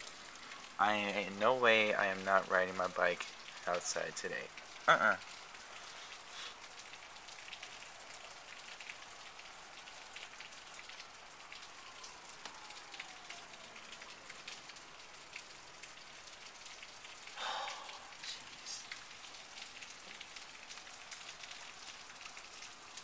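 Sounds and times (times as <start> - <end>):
steady rain falling: 0.0 - 23.0.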